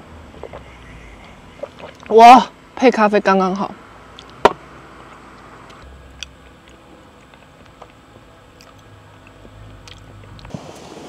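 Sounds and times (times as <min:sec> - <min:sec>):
low steady hum: 0:00.0 - 0:11.0
person chewing: 0:06.1 - 0:10.5.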